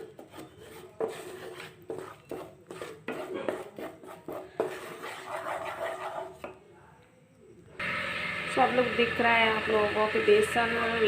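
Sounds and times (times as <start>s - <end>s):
spoon stirring and scraping pan: 0.0s - 6.6s.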